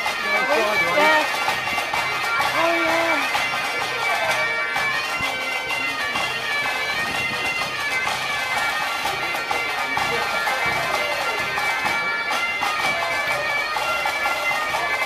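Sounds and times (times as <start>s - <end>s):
bagpipe playing a tune: 0.0s - 15.0s.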